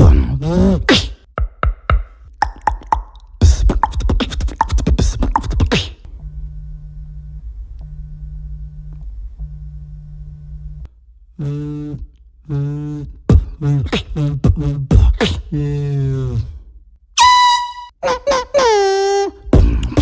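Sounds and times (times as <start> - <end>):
beatboxing sound effects: 0.0 - 6.1, 11.4 - 16.5, 19.5 - 20.0.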